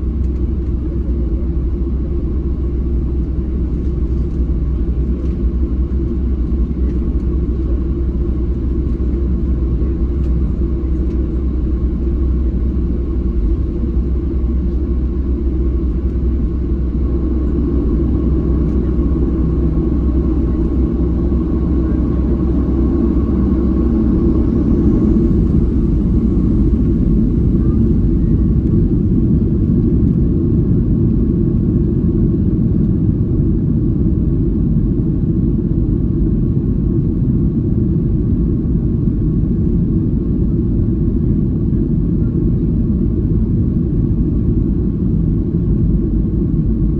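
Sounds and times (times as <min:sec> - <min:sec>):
airliner cabin engine rumble: 0:00.0 - 0:46.9
steady hum: 0:00.0 - 0:46.9.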